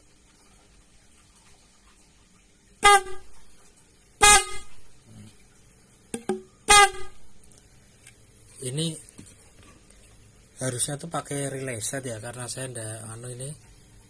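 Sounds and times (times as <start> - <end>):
car horn blasts: 2.8 - 3.4, 4.2 - 4.9, 6.7 - 7.3.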